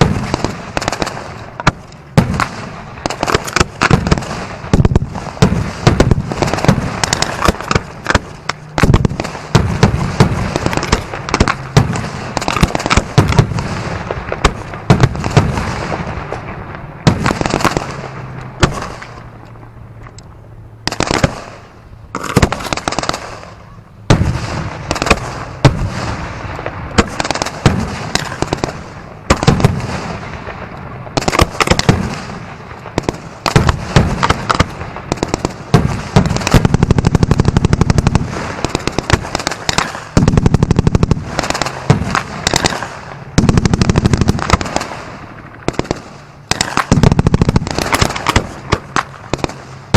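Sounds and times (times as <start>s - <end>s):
fireworks bangs and crackles: 0.0s - 49.9s.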